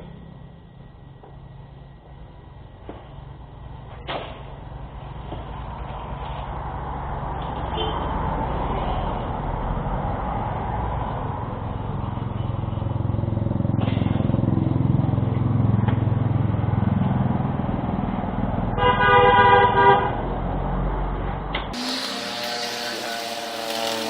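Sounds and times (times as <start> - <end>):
car horn honking: 18.8 - 20.1.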